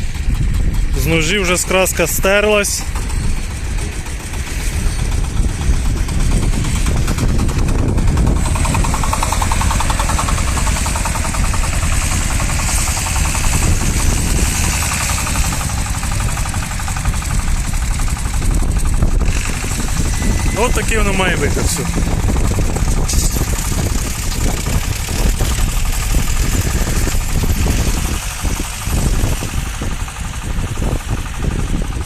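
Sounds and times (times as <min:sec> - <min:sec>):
diesel engine chugging: 0:00.0 - 0:32.0
rotary tiller in soil: 0:00.0 - 0:32.0.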